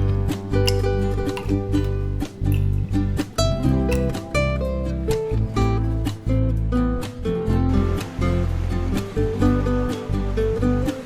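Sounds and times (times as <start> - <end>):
plucked guitar-like notes: 0.3 - 6.7.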